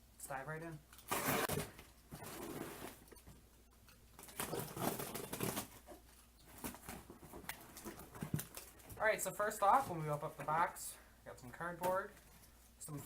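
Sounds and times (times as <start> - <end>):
cardboard box rustling and scraping: 1.1 - 3.0, 4.4 - 8.5.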